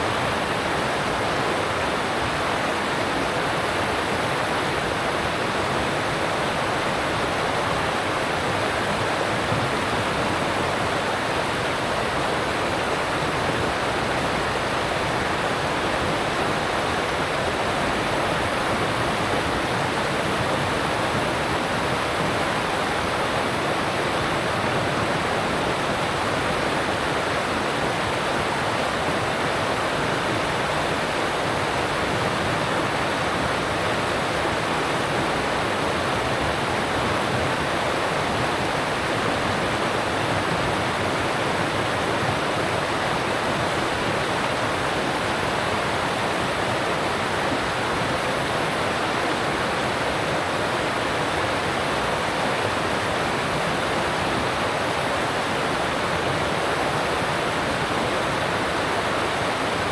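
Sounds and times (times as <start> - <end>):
stream rushing over rocks: 0.0 - 59.9.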